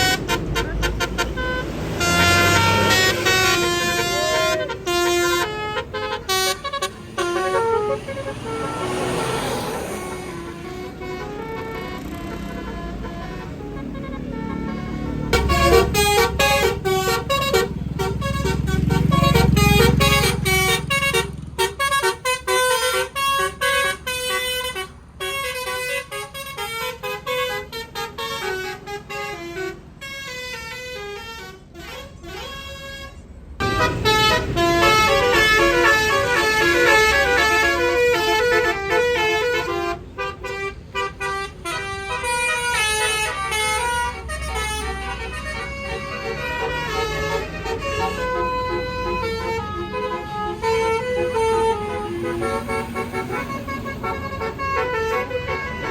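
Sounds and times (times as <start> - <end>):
low engine rumble: 0.0 - 25.8
multi-tone bus horn melody: 0.0 - 55.9.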